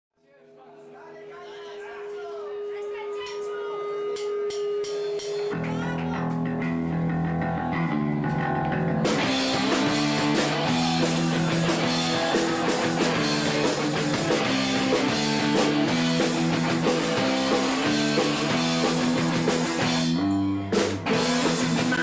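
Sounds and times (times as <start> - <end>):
drums and cymbals: 4.1 - 5.9, 9.0 - 22.0
guitar and bass riff: 5.5 - 22.0.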